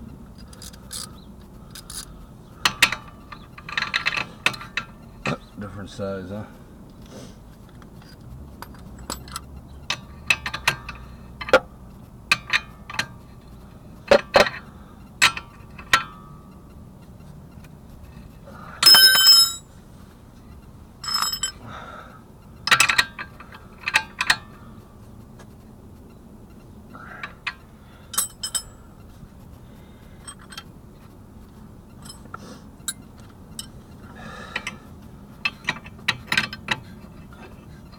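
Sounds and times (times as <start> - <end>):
metal hand tools clanking: 18.8 - 19.7, 21.0 - 21.6, 28.1 - 28.8.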